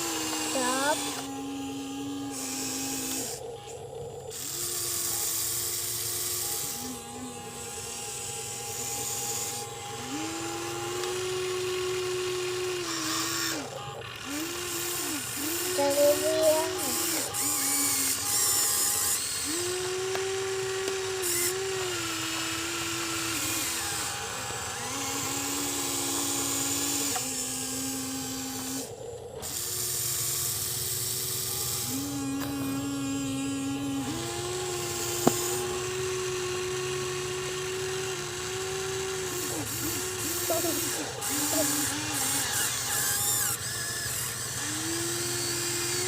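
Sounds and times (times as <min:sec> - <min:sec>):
electric gear motors whining: 0:00.0 - 0:46.0
sharp click: 0:35.2 - 0:35.5.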